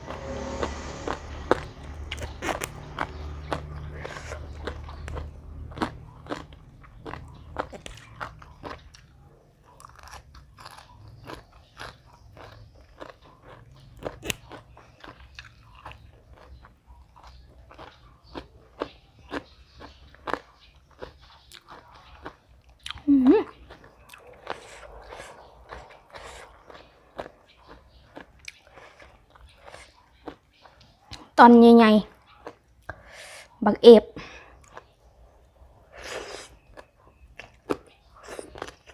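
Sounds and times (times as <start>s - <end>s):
low steady hum: 0.0s - 8.6s
crunchy chewing: 0.2s - 31.4s, 32.1s - 33.1s, 34.4s - 38.9s.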